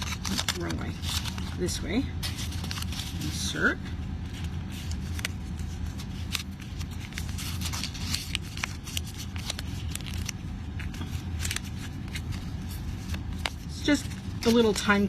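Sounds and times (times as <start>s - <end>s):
sharp paper clicks: 0.0s - 1.6s, 4.7s - 14.6s
paper rustling and crackling: 0.0s - 15.0s
steady low hum: 0.0s - 15.0s.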